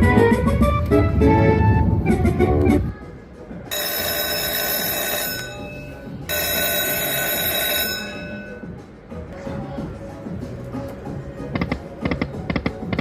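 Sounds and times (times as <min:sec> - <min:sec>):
slot machine music: 0:03.6 - 0:08.9
electronic bell ringing: 0:03.7 - 0:08.7.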